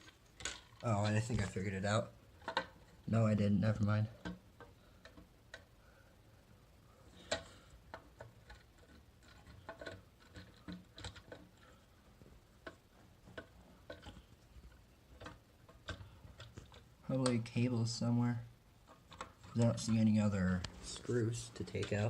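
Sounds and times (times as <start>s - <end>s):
faint clicks and taps on metal: 4.2s - 5.8s, 7.1s - 17.5s, 18.8s - 20.0s.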